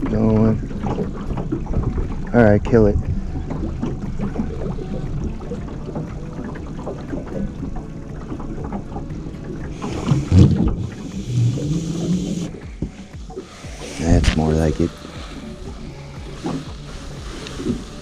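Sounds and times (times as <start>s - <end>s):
boat rumbling on water: 0.0s - 18.0s
hiss: 11.0s - 12.5s, 13.3s - 18.0s.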